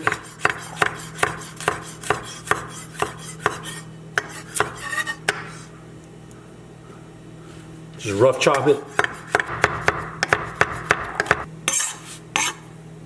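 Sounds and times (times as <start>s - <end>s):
knife chopping on cutting board: 0.0s - 5.5s, 8.8s - 12.6s.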